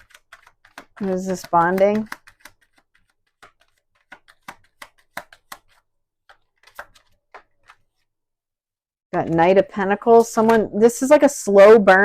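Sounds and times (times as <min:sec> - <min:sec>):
cards being shuffled: 0:00.0 - 0:08.2.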